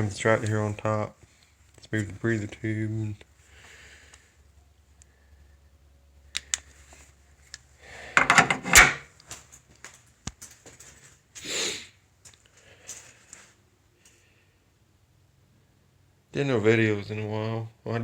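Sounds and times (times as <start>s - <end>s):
engine parts clattering: 8.1s - 9.1s.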